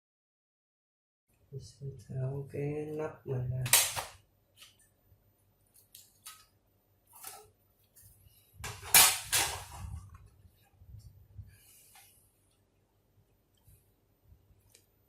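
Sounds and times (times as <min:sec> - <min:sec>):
plastic cover clatter and scrape: 0:08.6 - 0:10.0.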